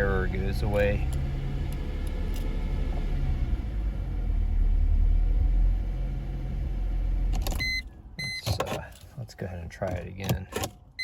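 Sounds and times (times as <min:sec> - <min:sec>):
car engine idling: 0:00.0 - 0:08.2.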